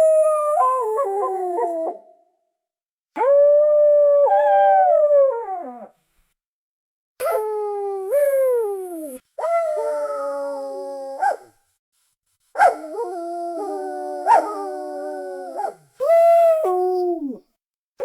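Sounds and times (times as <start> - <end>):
dog howling: 12.9 - 17.4.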